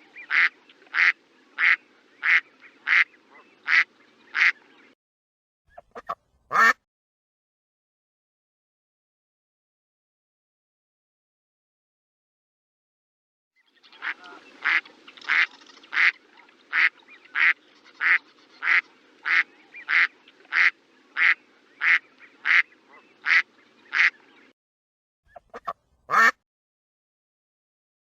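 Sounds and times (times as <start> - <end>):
duck quacking: 0.2 - 4.6, 5.8 - 6.8, 14.0 - 24.2, 25.3 - 26.4.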